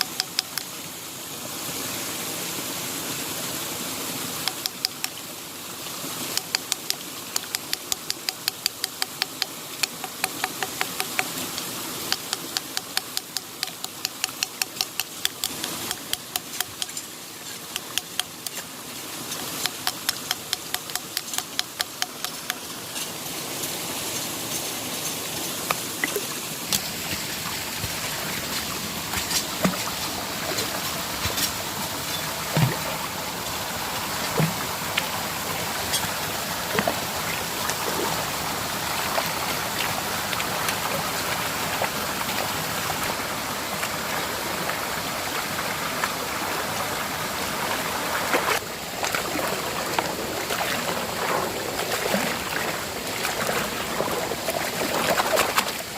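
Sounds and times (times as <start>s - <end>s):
sharp knocks and clicks: 0.0s - 0.7s, 4.5s - 5.2s, 6.3s - 17.0s, 17.7s - 18.6s, 19.4s - 22.6s
flowing stream water: 0.0s - 55.9s.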